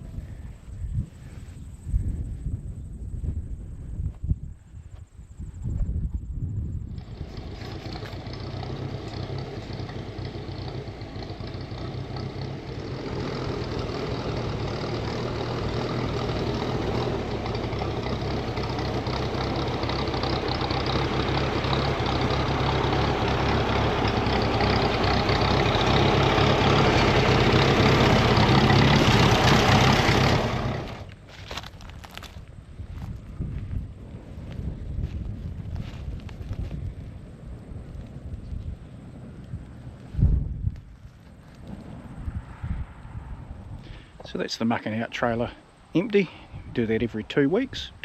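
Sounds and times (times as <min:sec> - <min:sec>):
vehicle engine running: 0:06.8 - 0:42.5.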